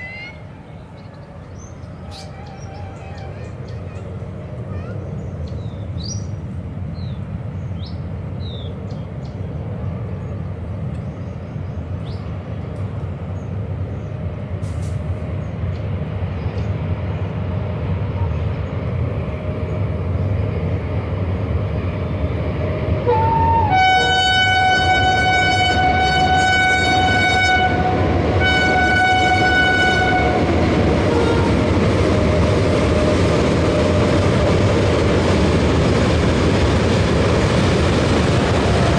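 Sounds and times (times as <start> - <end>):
locomotive rumbling across bridge: 0.0 - 38.9
locomotive horn blasts: 23.0 - 31.7.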